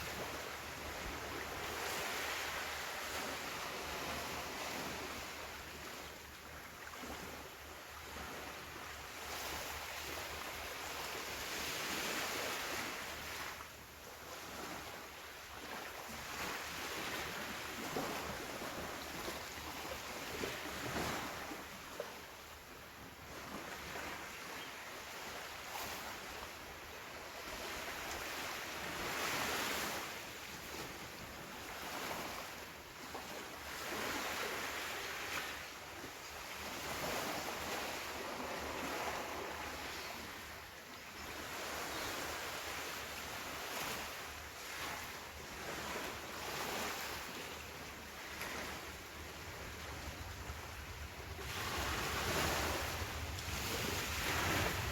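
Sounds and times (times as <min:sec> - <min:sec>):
ocean waves breaking on beach: 0:00.0 - 0:54.9
wind noise on microphone: 0:48.5 - 0:54.9.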